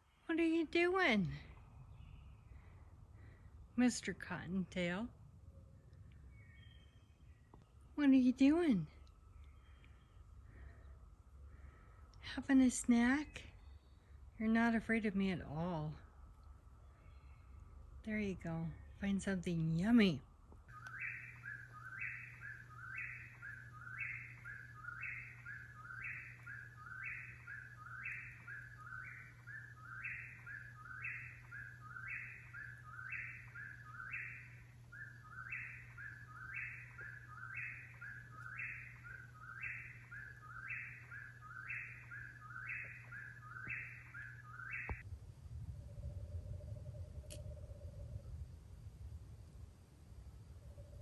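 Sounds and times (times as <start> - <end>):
bird two-part call: 20.7 - 45.0.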